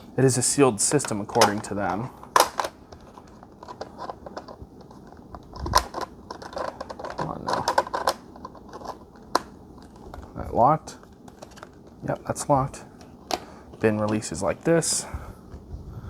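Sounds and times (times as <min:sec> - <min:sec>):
plastic parts clicking and knocking: 0:01.0 - 0:10.3, 0:11.0 - 0:12.1, 0:13.0 - 0:14.7.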